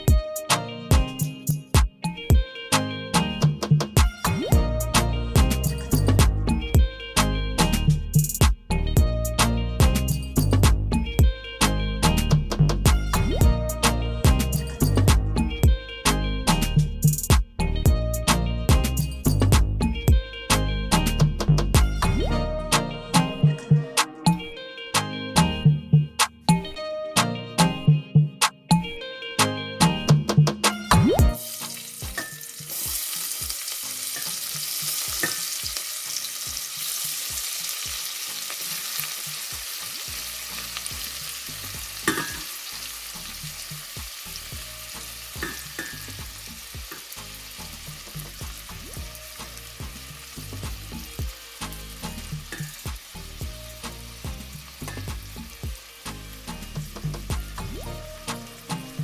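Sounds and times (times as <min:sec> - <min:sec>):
food sizzling in oil: 0:31.2 - 0:59.0.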